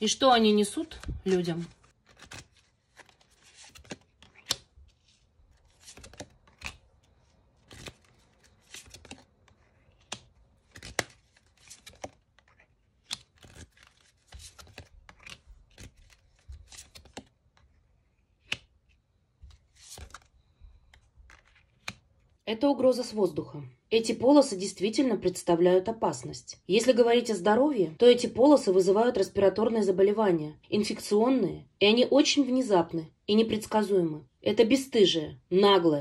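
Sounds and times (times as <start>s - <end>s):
cards shuffled and snapped: 0.9s - 17.6s, 18.4s - 22.1s
cards slapping on table: 3.0s - 4.7s, 5.8s - 6.8s, 18.4s - 18.7s, 19.5s - 20.3s, 20.9s - 22.0s.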